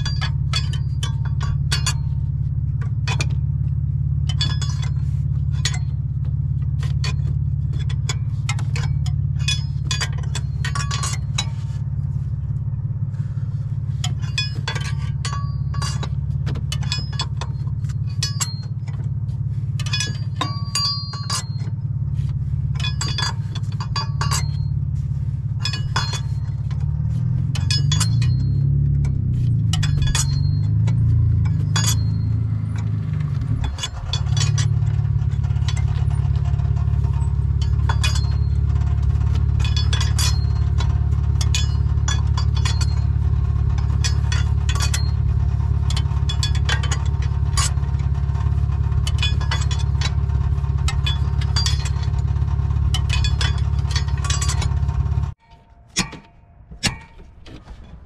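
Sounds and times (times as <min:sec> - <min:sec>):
metallic clinks of hand tools: 0:00.0 - 0:03.5, 0:04.2 - 0:11.8, 0:13.9 - 0:21.9, 0:22.7 - 0:24.8, 0:25.6 - 0:58.0
low mechanical hum: 0:00.0 - 0:58.0.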